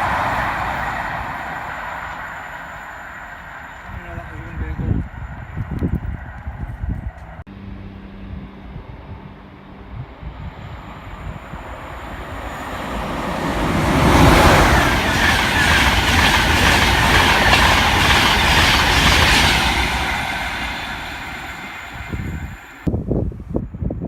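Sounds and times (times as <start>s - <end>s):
train passing at speed: 0.0s - 22.9s
train wheels clattering: 12.1s - 22.9s.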